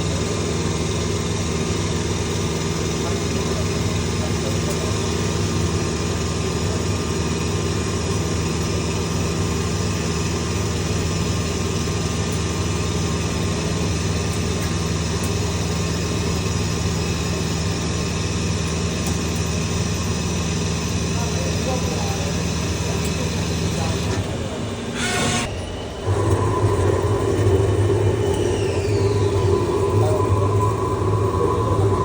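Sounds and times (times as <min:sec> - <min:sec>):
machine humming: 0:09.7 - 0:32.0.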